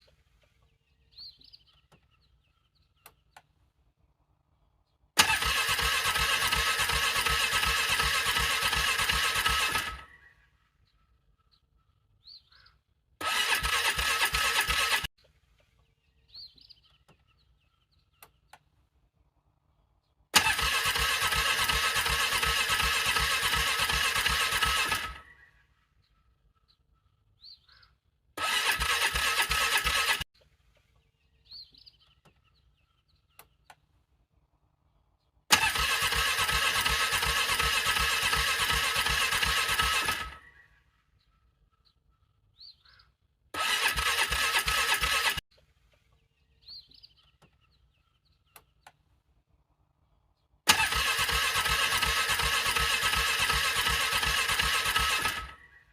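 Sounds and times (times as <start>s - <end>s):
car engine cranking: 5.2s - 10.1s, 13.2s - 15.1s, 20.3s - 25.2s, 28.4s - 30.3s, 35.5s - 40.4s, 43.6s - 45.4s, 50.7s - 55.6s.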